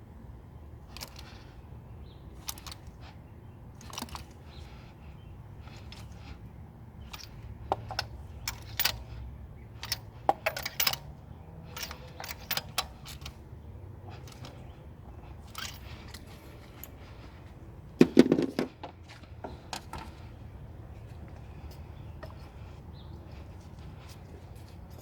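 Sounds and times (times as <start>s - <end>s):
metal tools clinking and tapping: 7.0s - 9.2s, 9.8s - 13.4s, 15.3s - 17.0s.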